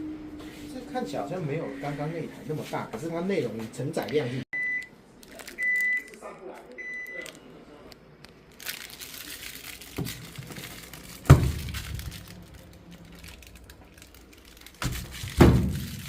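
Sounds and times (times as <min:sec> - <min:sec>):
rustling: 0:08.2 - 0:16.0.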